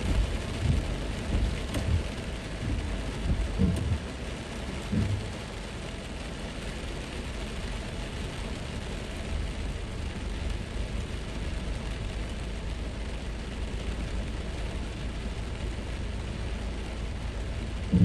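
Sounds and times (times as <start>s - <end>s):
low thuds: 0.0s - 5.6s
steady rain hissing: 0.0s - 18.0s.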